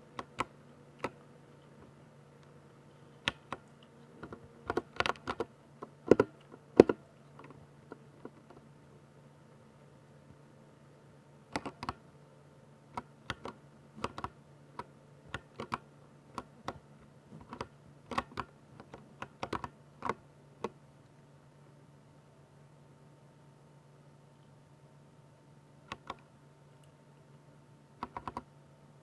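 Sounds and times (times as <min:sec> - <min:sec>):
faint low hum: 0:00.0 - 0:29.0
mechanical keyboard keystrokes: 0:00.2 - 0:01.2, 0:03.3 - 0:07.6, 0:11.5 - 0:12.0, 0:13.0 - 0:16.8, 0:17.4 - 0:20.8, 0:25.9 - 0:26.2, 0:28.0 - 0:28.5.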